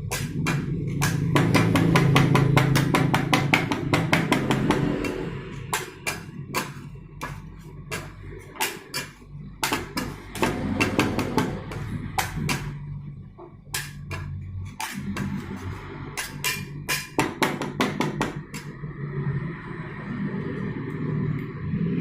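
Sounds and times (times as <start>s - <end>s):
low steady hum: 0.0s - 22.0s
metal spatulas tapping on plate: 13.7s - 15.4s, 16.2s - 18.7s.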